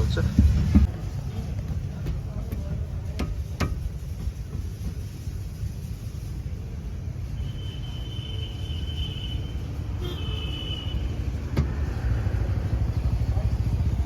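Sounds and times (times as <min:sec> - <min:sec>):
car engine low rumble: 0:00.0 - 0:07.0, 0:11.0 - 0:14.0.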